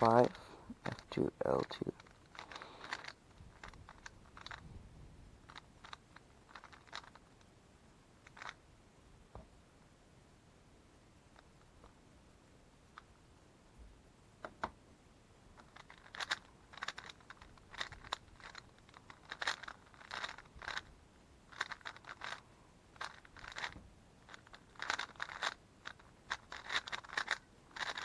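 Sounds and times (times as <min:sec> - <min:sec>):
puzzle cube clacking turns: 0:00.0 - 0:04.7, 0:05.4 - 0:07.5, 0:08.2 - 0:08.6, 0:15.5 - 0:20.9, 0:21.5 - 0:28.0.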